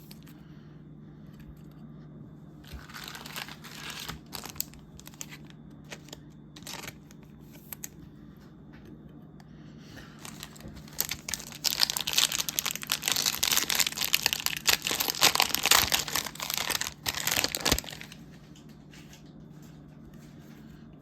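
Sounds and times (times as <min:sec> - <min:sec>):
plastic wrapper tearing and crinkling: 0:02.6 - 0:07.9, 0:10.2 - 0:18.2.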